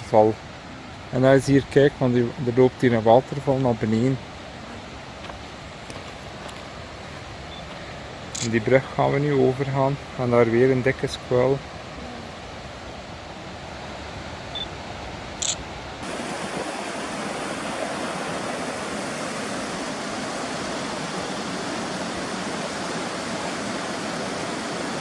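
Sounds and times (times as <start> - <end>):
creek rushing over rocks: 0.0 - 15.2, 15.8 - 25.0.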